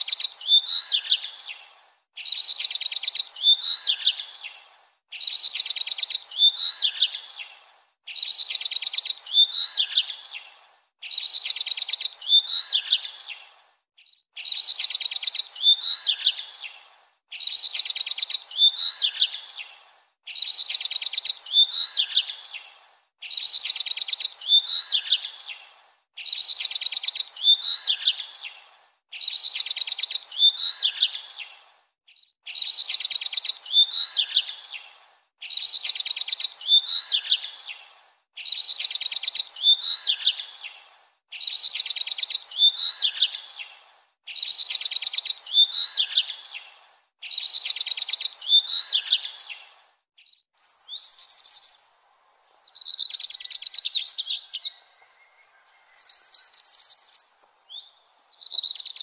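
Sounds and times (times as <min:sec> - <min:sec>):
songbird singing trilled phrase: 0:44.3 - 0:46.6, 0:50.2 - 0:51.9, 0:52.7 - 0:59.0.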